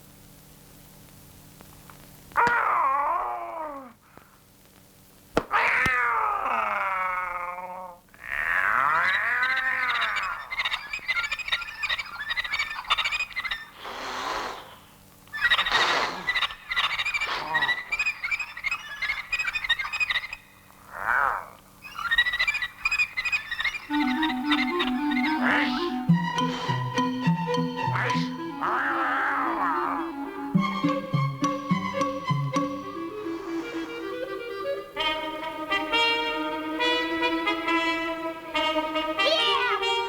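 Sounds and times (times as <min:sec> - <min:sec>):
cartoon animal cries: 0:02.4 - 0:04.0, 0:05.5 - 0:10.5, 0:20.9 - 0:22.2, 0:23.7 - 0:27.0, 0:27.6 - 0:30.6, 0:39.2 - 0:40.0
frog-like croaking: 0:20.8 - 0:21.6, 0:23.9 - 0:31.0.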